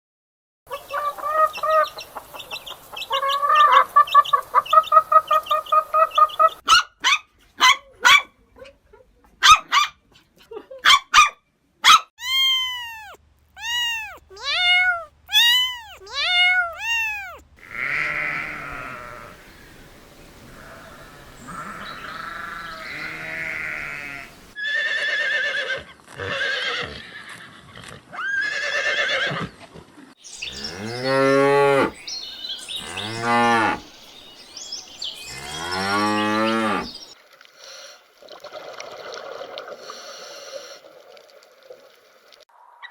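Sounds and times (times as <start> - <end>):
goats bleating: 12.2 - 19.5, 20.4 - 24.6
farm animal calls: 12.2 - 25.6, 30.3 - 37.2.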